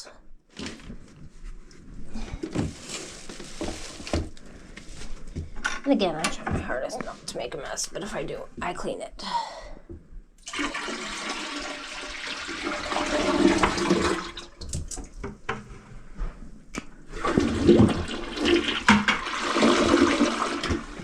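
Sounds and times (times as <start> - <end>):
toilet flushing: 10.4 - 14.8, 17.1 - 21.0.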